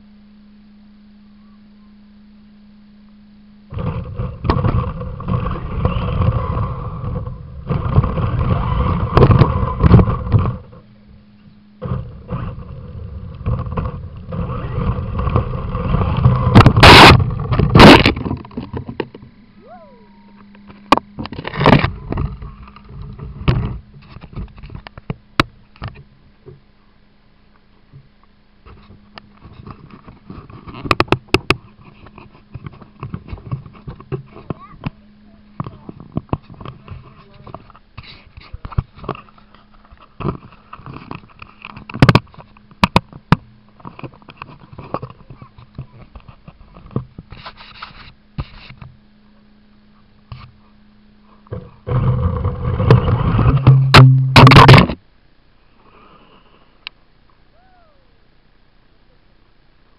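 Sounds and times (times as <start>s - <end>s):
faint steady hum: 0.0s - 59.9s
rc truck motor rumble: 0.0s - 59.9s
toy truck motor whining: 3.7s - 10.8s, 11.8s - 20.5s
rattling and knocks from bumps: 51.5s - 55.0s
sharp loud knocks: 53.6s - 55.0s.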